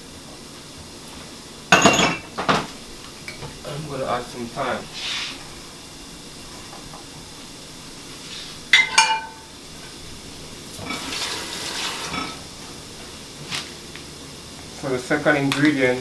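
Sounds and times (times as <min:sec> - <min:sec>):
metal utensil clanking on pot: 0:08.8 - 0:09.4.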